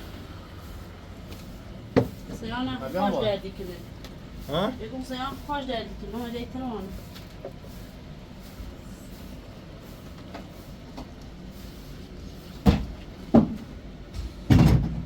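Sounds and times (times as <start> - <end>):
loud thumps or knocks: 14.2 - 15.0.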